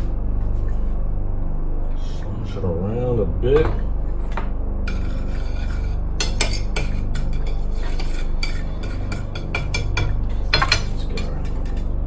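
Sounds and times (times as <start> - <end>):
steady low hum: 0.0 - 12.0
utensil scraping on a plate: 4.1 - 11.9
utensil clicking on a plate: 6.2 - 11.9.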